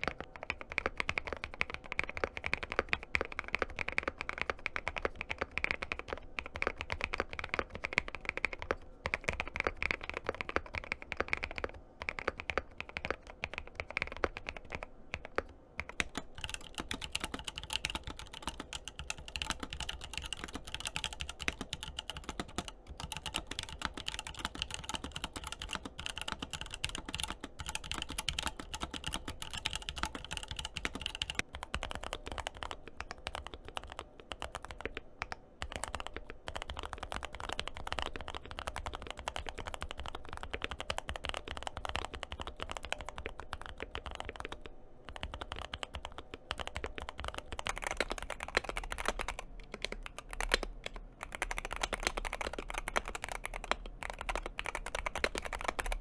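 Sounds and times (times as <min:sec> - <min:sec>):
mechanical keyboard typing: 0:00.0 - 0:56.0.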